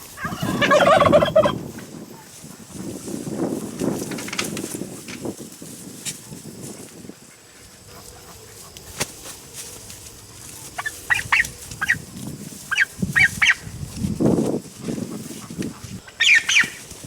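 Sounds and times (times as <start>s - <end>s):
turkeys calling: 0.0s - 1.8s, 7.3s - 13.7s, 15.0s - 17.0s
low scuffling rustle: 0.0s - 17.0s.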